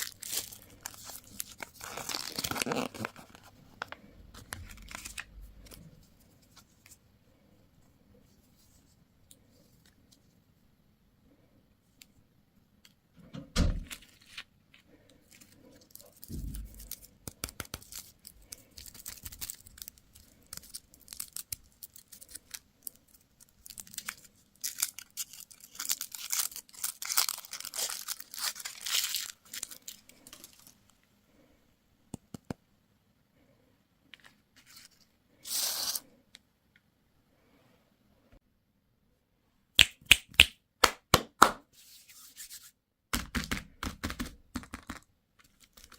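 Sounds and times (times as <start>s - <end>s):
packaging tearing and crinkling: 0.0s - 3.5s, 15.9s - 30.7s, 45.4s - 45.9s.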